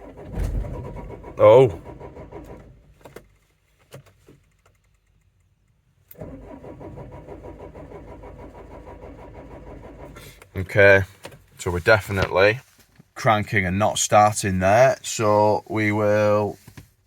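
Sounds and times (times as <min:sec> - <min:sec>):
starter motor cranking engine: 0:00.0 - 0:02.8, 0:06.1 - 0:10.6.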